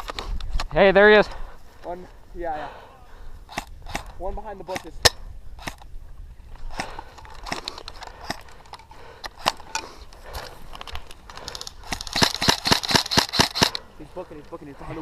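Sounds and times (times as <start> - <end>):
airsoft guns popping: 3.5 - 5.9, 6.7 - 13.9.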